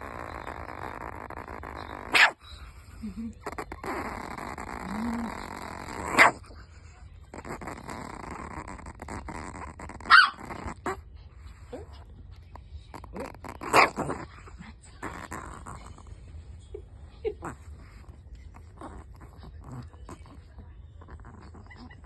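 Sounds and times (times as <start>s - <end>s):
small dog growling: 0.0s - 22.0s
small dog barking: 1.8s - 2.5s, 5.9s - 6.5s, 10.0s - 11.0s, 13.6s - 14.2s.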